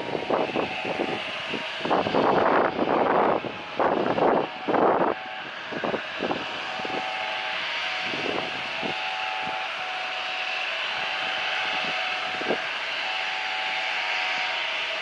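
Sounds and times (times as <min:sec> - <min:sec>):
wind gusts on microphone: 0:00.0 - 0:09.8, 0:10.8 - 0:13.7
jet engines hissing: 0:00.0 - 0:15.0.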